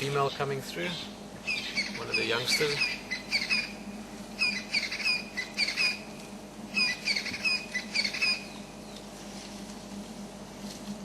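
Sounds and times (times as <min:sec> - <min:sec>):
bird squawking: 0:00.2 - 0:03.8, 0:04.4 - 0:06.1, 0:06.7 - 0:08.7.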